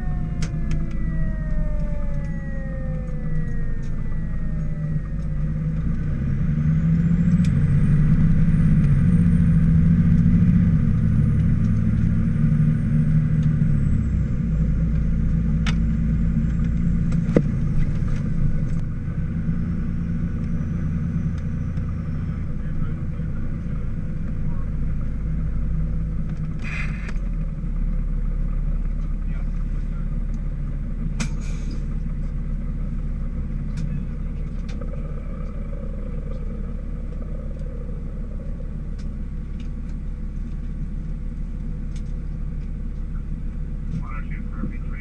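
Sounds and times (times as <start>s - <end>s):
siren winding down: 0.0s - 18.8s, 34.4s - 40.3s
diesel engine running: 0.0s - 45.0s.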